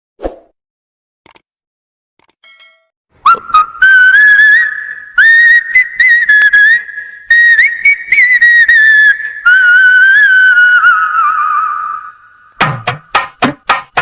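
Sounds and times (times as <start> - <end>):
whistled melody ringtone: 3.2 - 6.5.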